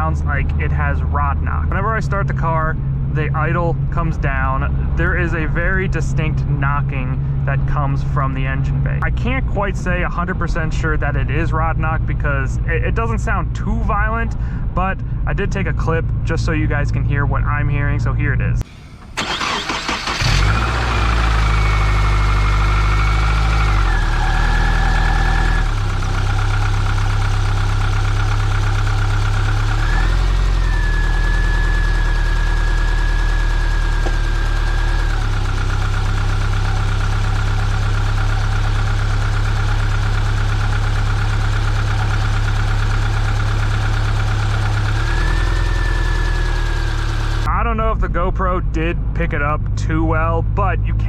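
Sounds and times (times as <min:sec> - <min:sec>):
car engine idling: 0:00.0 - 0:14.6, 0:16.5 - 0:47.5
high whine: 0:18.6 - 0:49.0
light engine knocking: 0:25.6 - 0:47.4.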